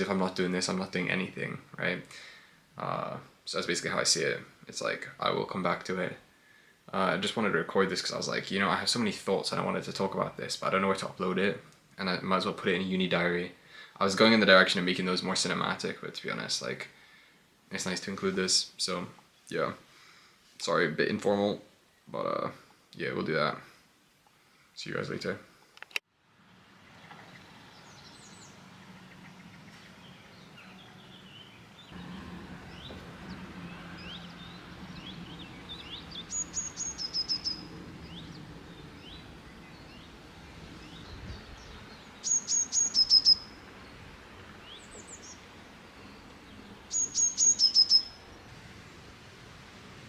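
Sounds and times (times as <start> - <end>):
birds chirping softly: 0.0 - 25.7, 26.8 - 49.7
bird singing descending phrase: 27.2 - 49.1.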